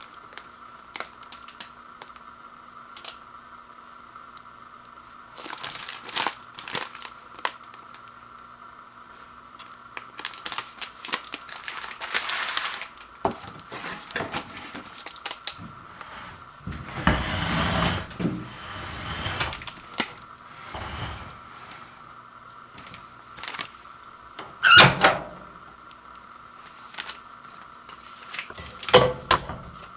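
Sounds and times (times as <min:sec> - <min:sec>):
packaging crinkling and tearing: 0:00.3 - 0:02.2, 0:05.4 - 0:08.2, 0:09.6 - 0:15.6, 0:22.8 - 0:23.8, 0:26.6 - 0:29.0
packaging rustling: 0:10.2 - 0:16.9, 0:22.8 - 0:23.8.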